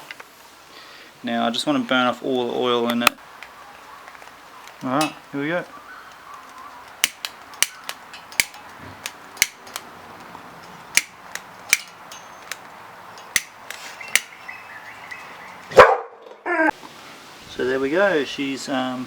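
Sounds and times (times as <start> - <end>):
fire crackling and popping: 2.2 - 15.8.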